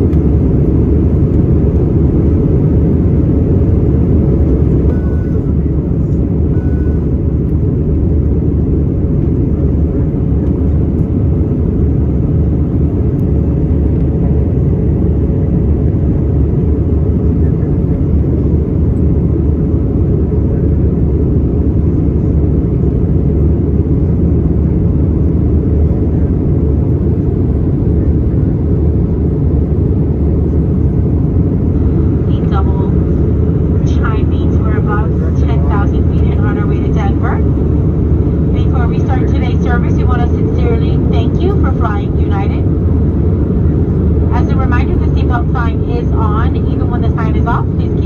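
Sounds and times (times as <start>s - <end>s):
aircraft engine and airflow drone: 0.0s - 48.0s
faint steady hum: 29.1s - 48.0s.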